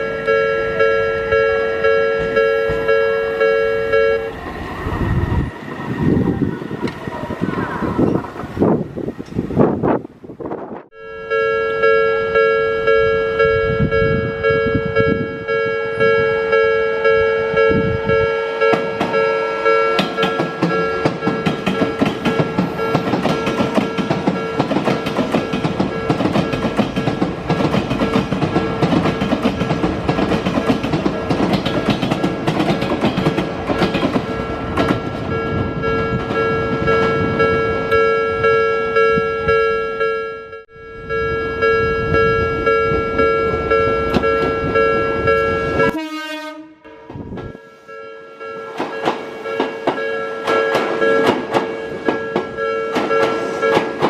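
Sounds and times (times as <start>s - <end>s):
level-crossing warning bell: 0.0s - 4.4s, 10.9s - 54.0s
train wheels and motor rushing: 4.2s - 10.9s, 18.1s - 38.0s, 48.6s - 54.0s.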